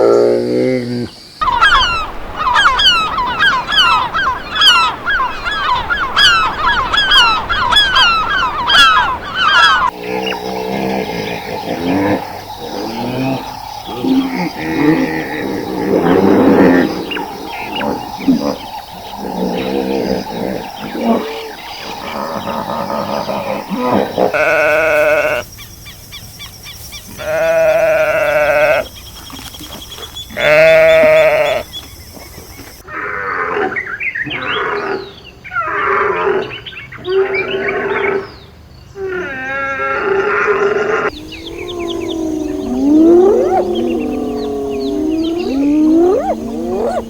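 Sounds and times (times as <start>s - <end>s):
sheep bleating: 23.7s - 25.4s, 27.2s - 28.9s, 30.3s - 31.6s.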